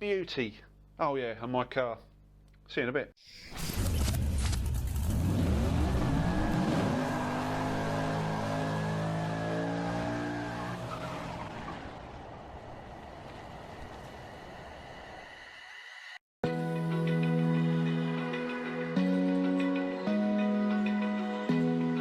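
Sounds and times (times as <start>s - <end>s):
car engine accelerating: 4.4s - 13.5s.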